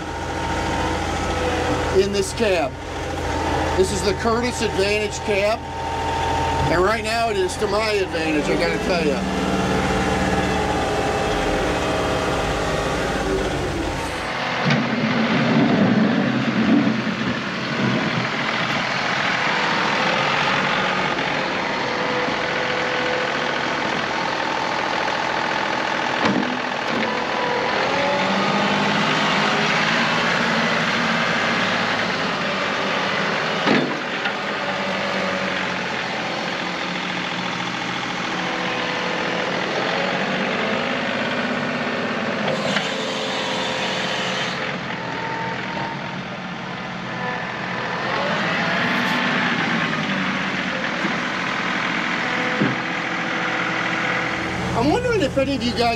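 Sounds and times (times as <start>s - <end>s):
tractor diesel engine running: 0.0s - 55.9s.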